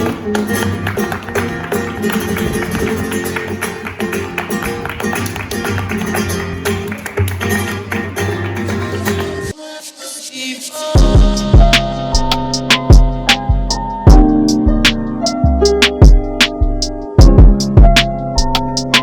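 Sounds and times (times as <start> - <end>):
flamenco guitar music: 0.0 - 9.6, 11.0 - 16.6, 17.2 - 19.0
sharp percussive strokes: 11.0 - 13.5.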